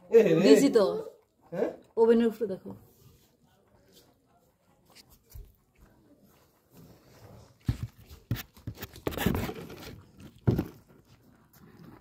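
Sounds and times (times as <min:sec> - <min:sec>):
rustling scraping noise: 0:06.6 - 0:12.0.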